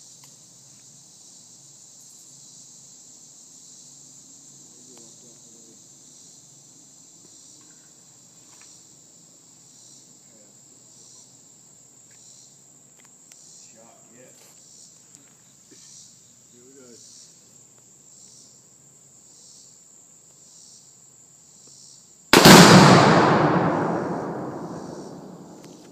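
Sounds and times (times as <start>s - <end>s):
insects chorus: 0.0s - 25.9s.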